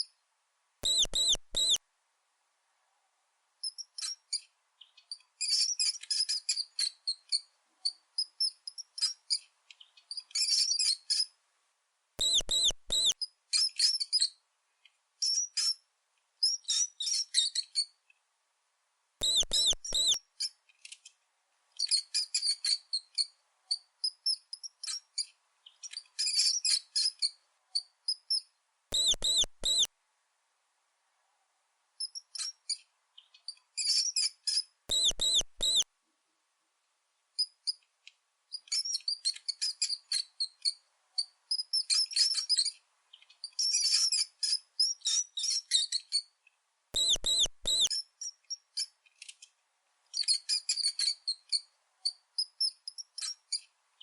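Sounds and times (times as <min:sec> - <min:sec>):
mouse squeaking: 0:00.8 - 0:01.8, 0:03.6 - 0:09.4, 0:10.1 - 0:11.3, 0:12.2 - 0:14.4, 0:15.2 - 0:15.8, 0:16.4 - 0:17.9, 0:19.2 - 0:20.6, 0:21.8 - 0:29.9, 0:32.0 - 0:32.8, 0:33.4 - 0:35.8, 0:38.5 - 0:46.3, 0:47.0 - 0:49.0, 0:50.1 - 0:53.7.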